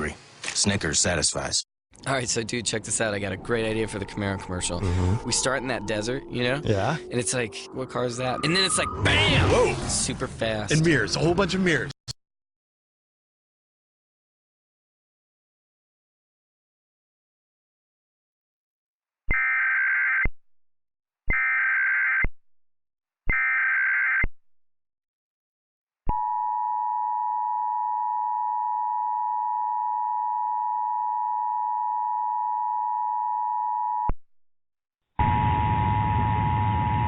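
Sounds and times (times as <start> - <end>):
warbling data tone bursts: 3.4 - 10.3.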